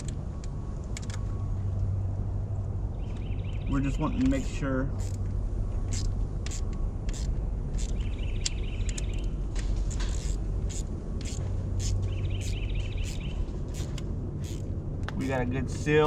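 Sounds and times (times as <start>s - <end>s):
steady low hum: 0.0s - 16.0s
wrench clicking: 5.0s - 5.3s, 5.9s - 9.3s, 9.9s - 14.7s.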